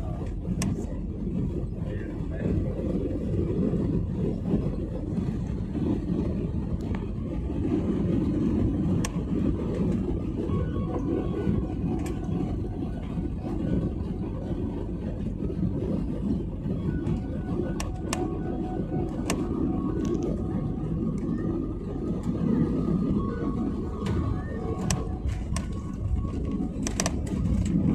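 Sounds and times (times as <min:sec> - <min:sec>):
aircraft cabin rumble: 0:00.0 - 0:27.9
sharp clicks and rattles: 0:06.6 - 0:27.9.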